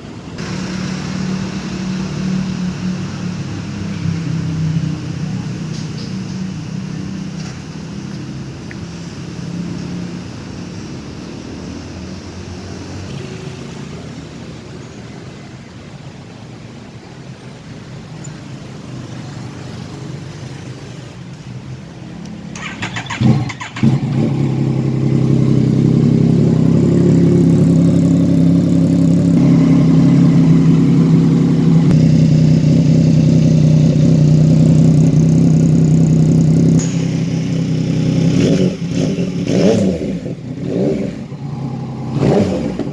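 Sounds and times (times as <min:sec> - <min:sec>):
rapid engine clatter: 0:00.4 - 0:08.8, 0:22.5 - 0:42.9
motorcycle engine idling: 0:00.4 - 0:11.3, 0:22.5 - 0:42.9.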